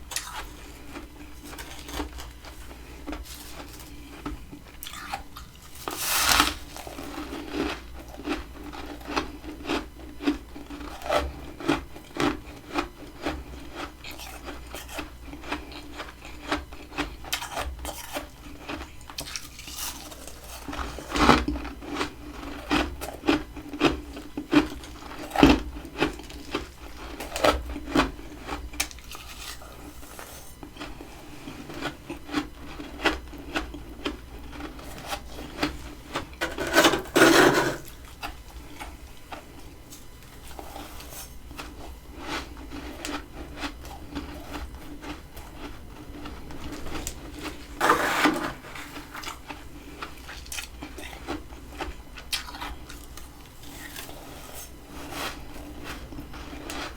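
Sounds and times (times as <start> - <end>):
utensil scraping frost: 36.4 - 38.0, 47.8 - 49.2.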